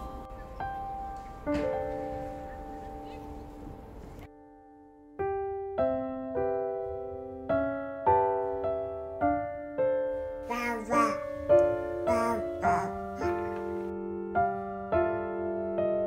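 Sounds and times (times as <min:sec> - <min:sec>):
gentle piano music: 0:00.0 - 0:16.0
high voice: 0:10.4 - 0:13.6.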